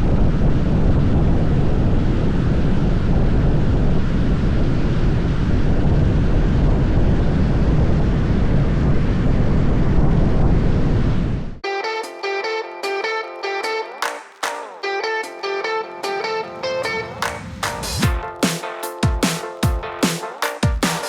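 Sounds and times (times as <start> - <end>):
guitar music: 11.6 - 21.0.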